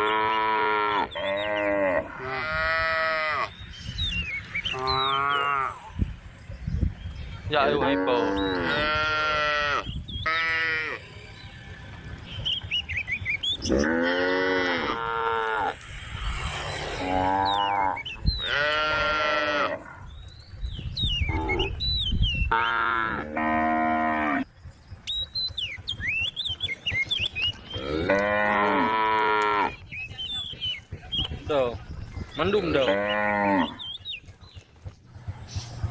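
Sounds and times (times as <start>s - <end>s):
cattle mooing: 4.8s - 5.8s, 7.7s - 11.0s, 13.6s - 15.8s, 17.0s - 20.0s, 22.5s - 24.4s, 27.7s - 29.8s, 32.7s - 33.8s.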